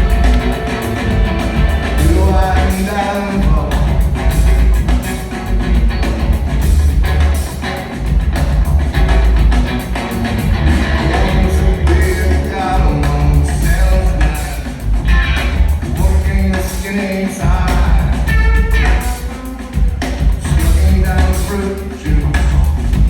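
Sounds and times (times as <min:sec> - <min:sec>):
person singing: 0:00.0 - 0:04.6, 0:11.0 - 0:14.8
rock band playing live: 0:00.0 - 0:23.0.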